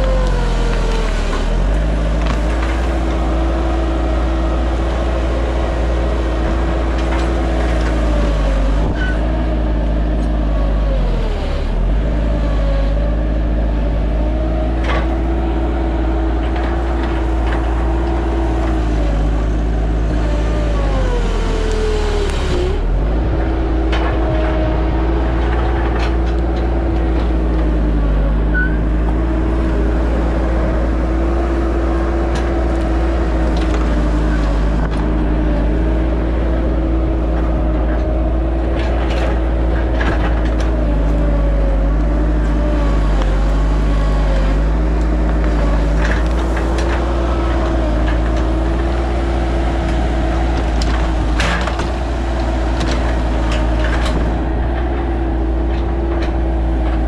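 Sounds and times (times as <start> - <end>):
sharp cracks and knocks: 0.0 - 3.8, 4.7 - 9.2, 14.7 - 20.7, 21.7 - 27.9, 30.5 - 57.0
diesel engine running: 0.0 - 57.0.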